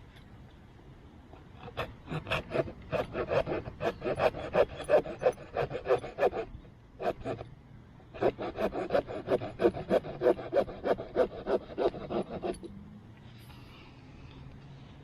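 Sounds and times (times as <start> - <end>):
small saw cutting a wet stick: 1.6 - 7.5, 8.2 - 12.7.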